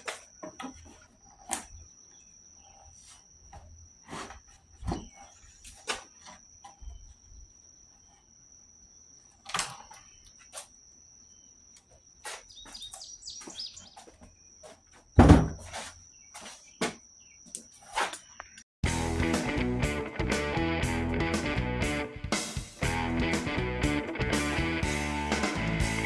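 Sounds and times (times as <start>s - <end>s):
cricket trill: 0.0s - 18.6s
chirps: 0.6s - 3.6s, 9.2s - 14.7s, 16.1s - 18.6s
heavy thump: 15.2s - 15.7s.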